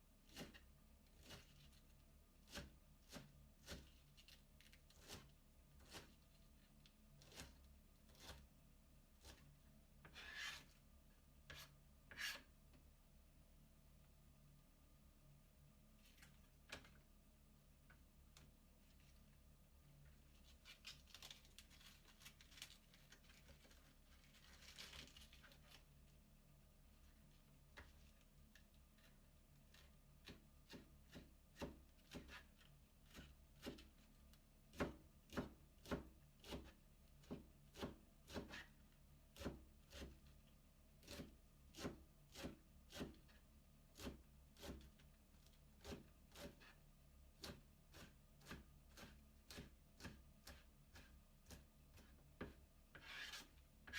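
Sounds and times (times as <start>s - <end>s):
knife cutting cabbage on board: 0.2s - 1.8s, 2.4s - 6.4s, 7.2s - 8.5s, 9.2s - 10.8s, 11.5s - 12.5s, 29.0s - 34.1s, 34.7s - 40.4s, 41.0s - 46.8s, 47.4s - 53.9s.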